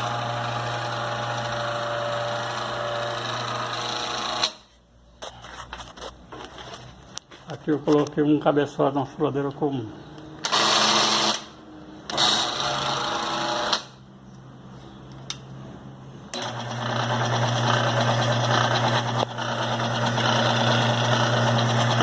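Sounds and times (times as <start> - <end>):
drill press motor humming: 0.0 - 4.6, 10.4 - 14.0, 16.3 - 22.0.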